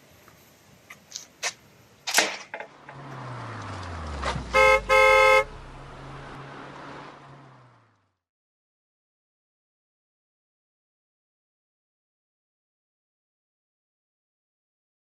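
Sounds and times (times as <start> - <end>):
sharp clicks and knocks: 0.9 - 3.0
engine running low: 2.7 - 8.2
car horn honking: 4.4 - 6.3.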